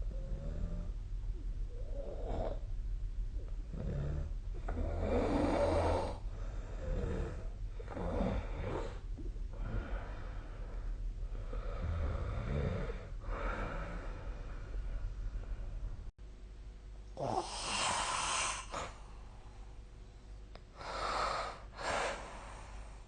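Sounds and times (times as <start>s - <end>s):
person snoring: 0.1s - 0.9s, 3.7s - 10.8s, 11.4s - 14.5s, 17.2s - 19.0s.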